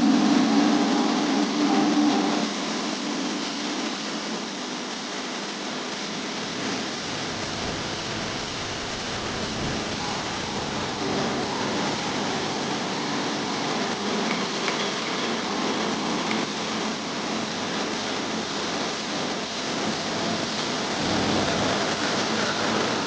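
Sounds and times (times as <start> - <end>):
pressure washer spraying car: 6.1 - 23.0.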